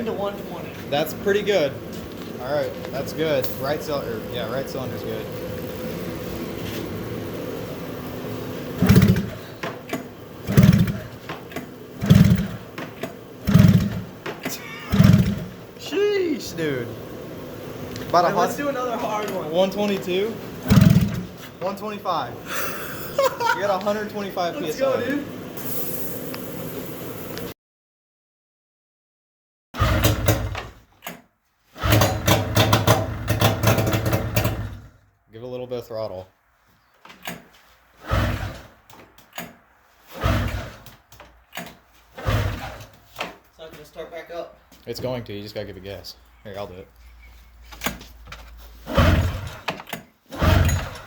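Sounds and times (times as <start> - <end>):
engine cranking without firing: 7.8 - 22.3, 29.8 - 31.2, 31.8 - 35.1, 37.0 - 43.5, 47.2 - 51.0
snowmobile engine firing roughly: 8.8 - 9.6, 10.4 - 11.2, 12.0 - 12.8, 13.4 - 14.2, 14.8 - 16.8, 20.6 - 21.4, 31.8 - 34.9, 42.2 - 42.9, 48.9 - 49.7, 50.4 - 51.0.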